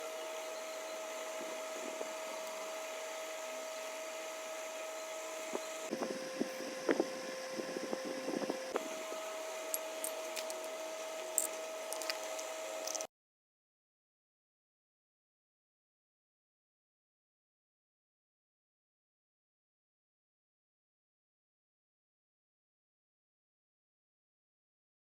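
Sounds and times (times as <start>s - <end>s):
small motor humming: 0.0s - 13.1s.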